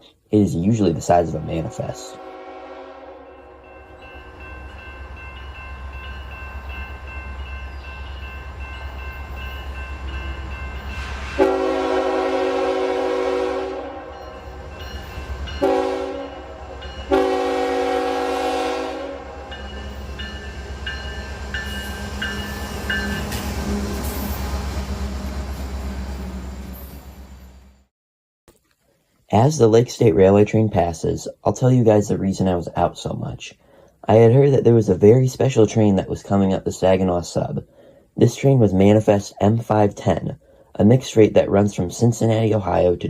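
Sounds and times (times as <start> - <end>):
locomotive horn blasts: 1.6 - 4.0, 11.0 - 14.4, 15.6 - 19.6.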